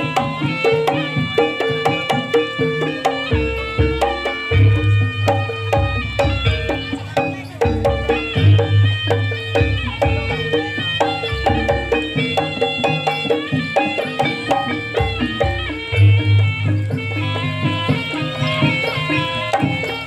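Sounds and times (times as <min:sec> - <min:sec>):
drums: 0:00.0 - 0:20.0
gong and metallophone ensemble: 0:00.0 - 0:20.0.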